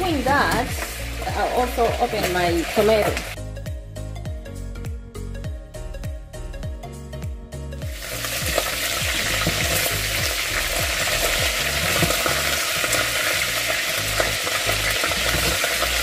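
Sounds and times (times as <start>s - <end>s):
chicken sizzling in hot oil: 0.0s - 3.4s, 7.8s - 16.0s.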